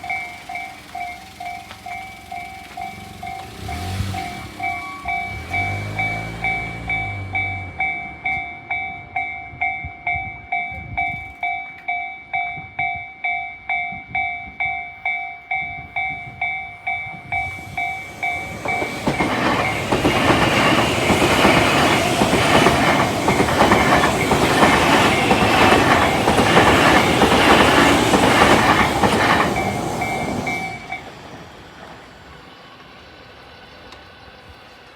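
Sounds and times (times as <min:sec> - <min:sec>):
train wheels clattering over rail joints: 0:00.0 - 0:09.8, 0:16.0 - 0:32.6
level crossing warning bell: 0:00.0 - 0:33.4.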